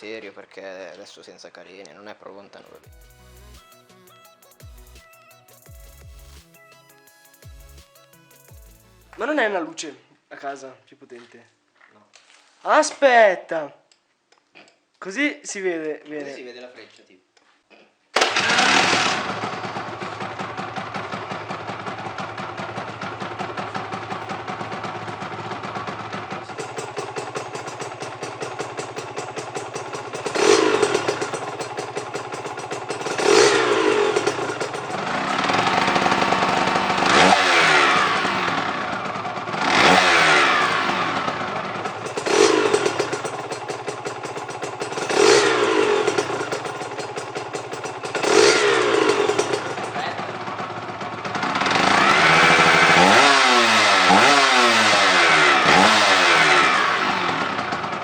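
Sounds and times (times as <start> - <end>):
two-stroke motorcycle engine revving: 18.2 - 58.0.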